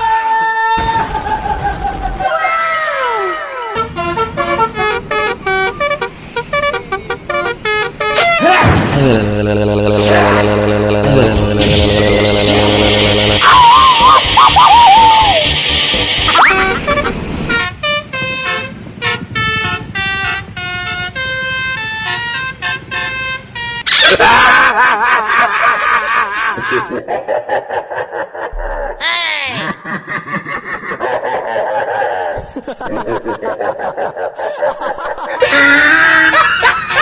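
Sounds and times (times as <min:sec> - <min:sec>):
bus air horn playing a tune: 0:03.8 - 0:08.6, 0:09.3 - 0:13.4, 0:15.6 - 0:23.9.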